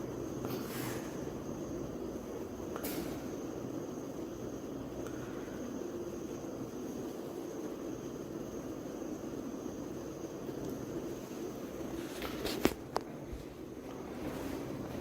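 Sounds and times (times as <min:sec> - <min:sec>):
background hum: 0:00.0 - 0:15.0.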